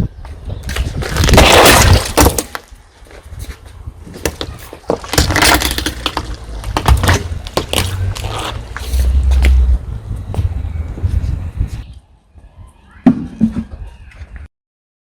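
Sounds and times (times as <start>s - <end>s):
tyre crushing crunchy objects: 0.6s - 9.8s
low rumble: 6.1s - 11.8s.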